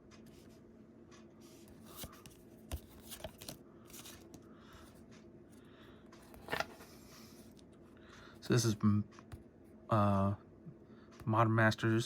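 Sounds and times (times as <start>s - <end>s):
faint steady hum: 0.0s - 12.0s
cards tapping and scraping: 1.6s - 4.4s, 6.2s - 7.5s.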